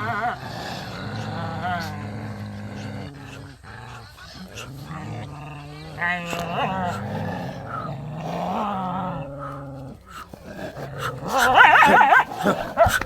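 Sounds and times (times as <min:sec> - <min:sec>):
dogs crying high and wavering: 0:00.0 - 0:01.9, 0:05.6 - 0:13.0
dog growling: 0:00.0 - 0:13.0.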